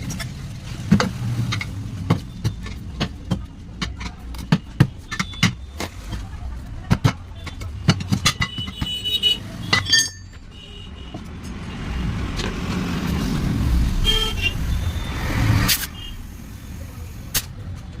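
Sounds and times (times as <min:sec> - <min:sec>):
road vehicle passing: 0:11.0 - 0:17.9.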